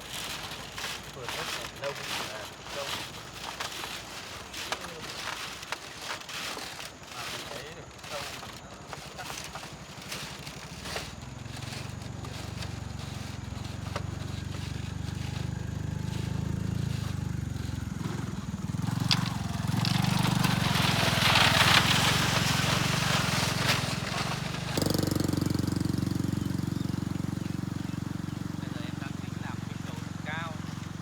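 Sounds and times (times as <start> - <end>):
vehicle engine droning: 10.5 - 31.0.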